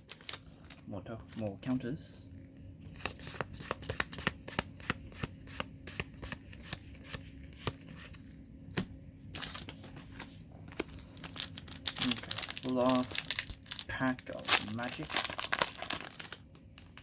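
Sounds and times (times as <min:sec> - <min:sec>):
papery rustle: 0:09.4 - 0:17.0.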